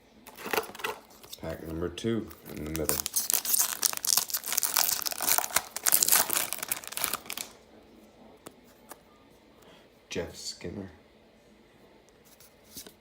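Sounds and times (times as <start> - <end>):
wrapper tearing and crinkling: 0.3 - 1.5, 2.3 - 7.6.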